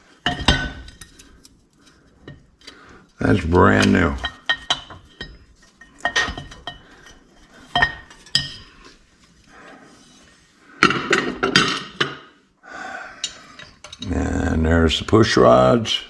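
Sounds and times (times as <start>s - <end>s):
metal-on-metal clatter: 0.2s - 1.4s, 3.7s - 8.7s
metal parts and tools clinking: 0.2s - 8.8s, 13.2s - 14.2s.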